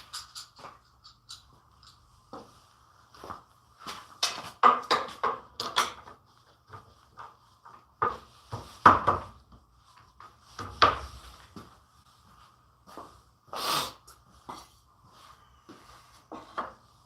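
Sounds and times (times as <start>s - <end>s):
wood and tools clattering on workbench: 4.2s - 9.4s.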